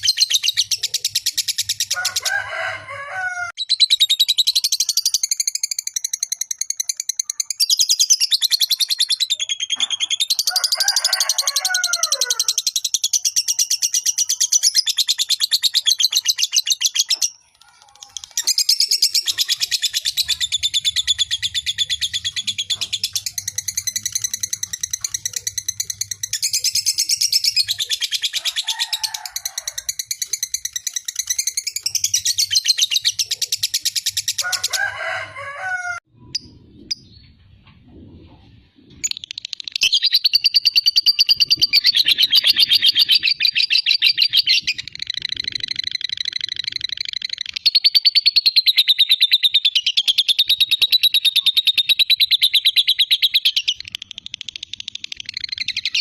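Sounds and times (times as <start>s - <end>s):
lovebird chattering trill: 0.0s - 2.0s, 12.6s - 34.5s, 39.0s - 56.0s.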